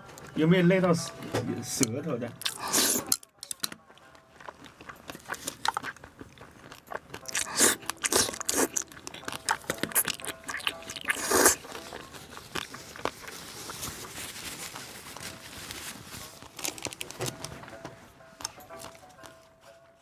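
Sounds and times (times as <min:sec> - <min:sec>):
crunchy bites and chewing: 0:02.4 - 0:15.2.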